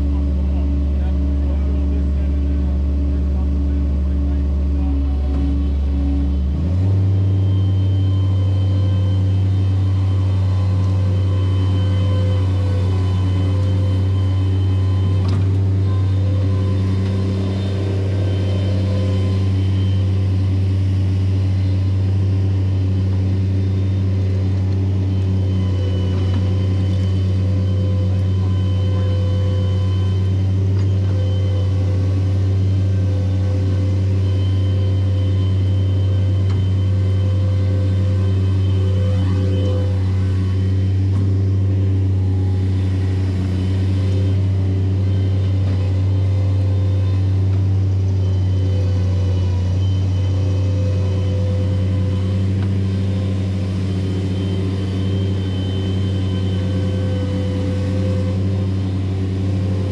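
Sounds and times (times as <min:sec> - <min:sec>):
earthmoving machine engine droning: 0:00.0 - 0:59.9.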